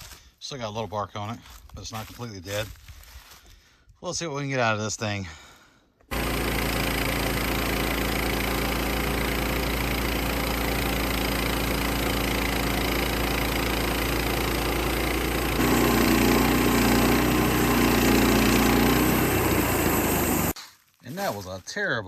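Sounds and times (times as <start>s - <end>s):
band saw cutting log: 6.1s - 20.6s
sawmill engine running: 6.1s - 20.6s.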